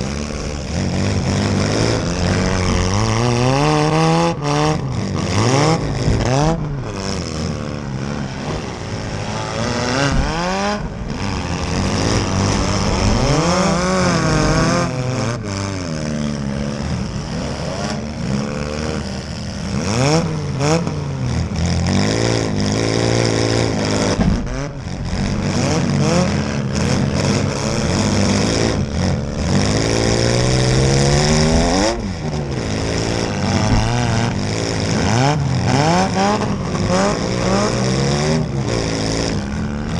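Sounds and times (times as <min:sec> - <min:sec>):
car engines revving hard: 0:00.0 - 0:39.9
cars crunching into each other: 0:23.0 - 0:39.9.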